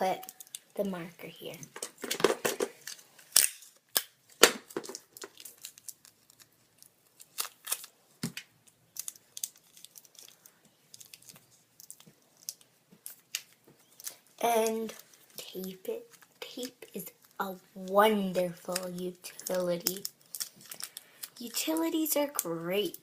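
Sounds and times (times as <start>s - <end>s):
sticky tape being pulled and torn: 2.8s - 4.2s.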